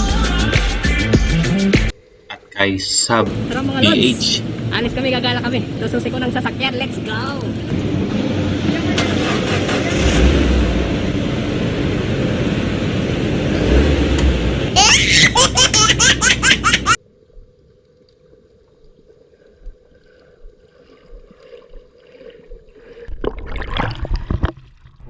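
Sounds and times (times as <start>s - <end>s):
loud rumbling: 7.7s - 15.0s
person laughing: 14.8s - 17.0s.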